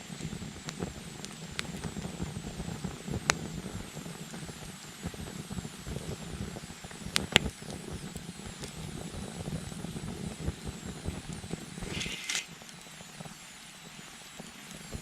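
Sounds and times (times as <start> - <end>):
campfire crackling: 0.0 - 15.0
fire pops: 0.1 - 13.3
short hiss: 11.8 - 12.5.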